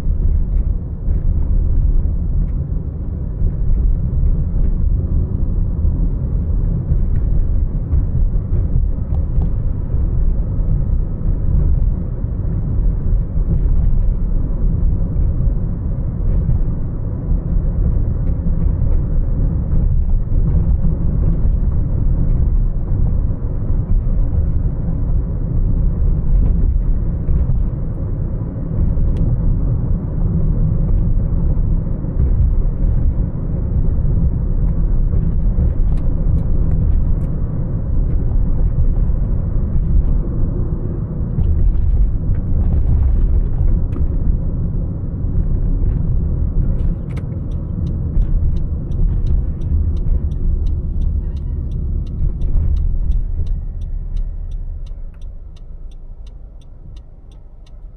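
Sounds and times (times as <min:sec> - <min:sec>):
car road and engine rumble: 0:00.0 - 0:57.9
regular ticking clicks: 0:47.0 - 0:57.9.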